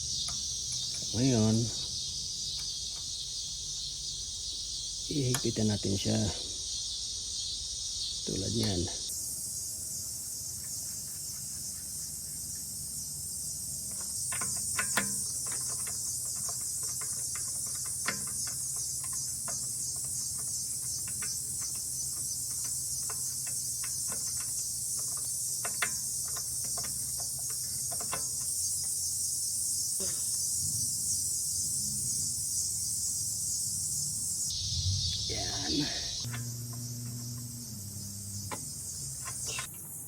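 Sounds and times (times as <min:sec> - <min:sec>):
crickets chirring: 0:00.0 - 0:40.0
clicks of pump parts handled: 0:13.9 - 0:29.0, 0:38.5 - 0:39.8.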